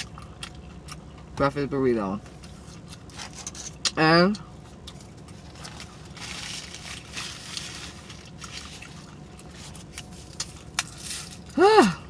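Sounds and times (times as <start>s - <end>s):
wet chewing and lip-smacking: 0.0s - 1.4s, 8.3s - 11.1s.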